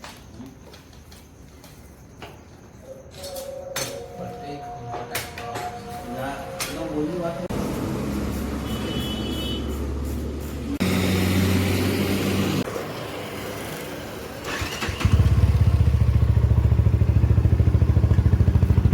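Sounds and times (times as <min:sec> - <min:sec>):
motorcycle starter cranking: 0:14.4 - 0:16.0
motorcycle engine idling: 0:14.5 - 0:18.9.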